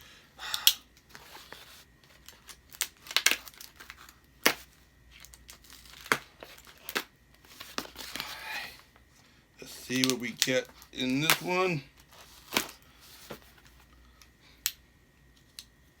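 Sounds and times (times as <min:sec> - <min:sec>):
packaging crinkling: 0:01.0 - 0:08.9, 0:09.6 - 0:13.9
tape ripping: 0:01.2 - 0:08.4.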